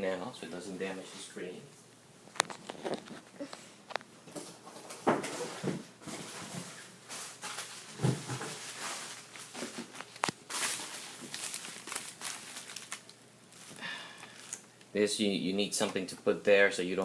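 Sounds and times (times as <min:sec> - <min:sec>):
rustling of objects: 0:02.3 - 0:14.9.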